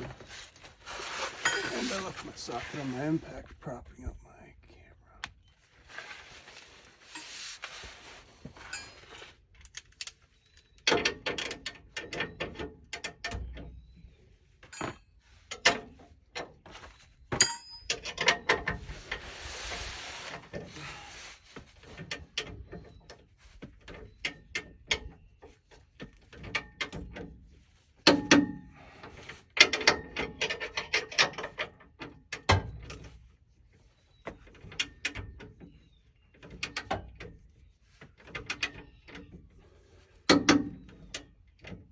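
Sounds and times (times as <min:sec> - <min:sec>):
metal tools clinking: 0:01.4 - 0:02.5, 0:08.6 - 0:09.3, 0:14.6 - 0:15.1.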